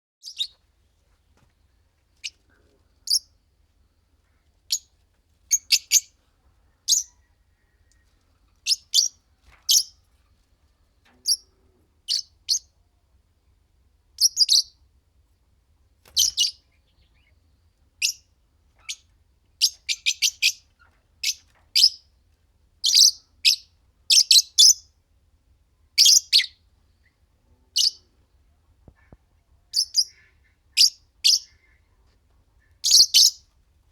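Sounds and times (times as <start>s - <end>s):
lovebirds chirping: 0.2s - 0.6s, 3.0s - 3.3s, 5.5s - 10.0s, 22.8s - 24.8s, 28.9s - 32.0s, 32.6s - 33.5s.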